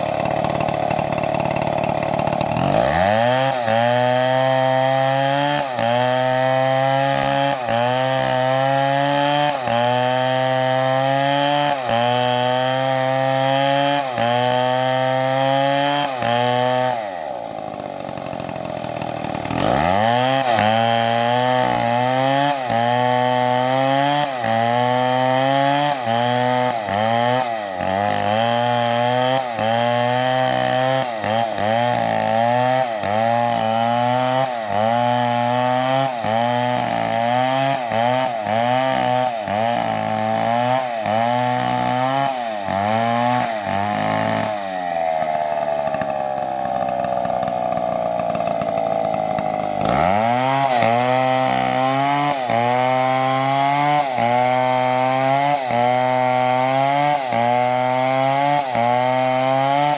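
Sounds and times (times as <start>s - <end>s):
chainsaw cutting wood: 0.0s - 59.9s.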